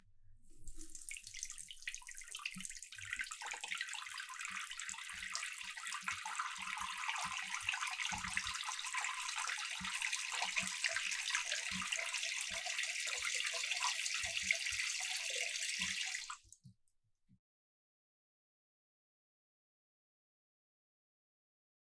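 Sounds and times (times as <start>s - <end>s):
tap running into sink: 0.7s - 15.1s.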